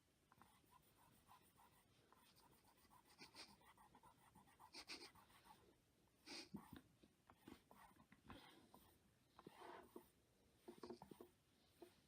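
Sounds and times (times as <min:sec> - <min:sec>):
faint soft rubbing and scraping: 0:06.6 - 0:12.0.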